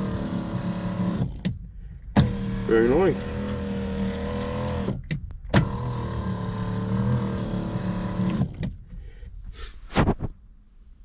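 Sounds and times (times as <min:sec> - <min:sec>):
electric seat motor humming: 0:00.0 - 0:01.4, 0:02.1 - 0:08.6.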